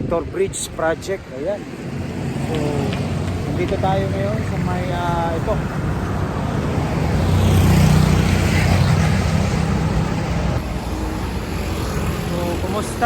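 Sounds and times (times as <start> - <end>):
vehicle passing by: 1.6 - 13.0.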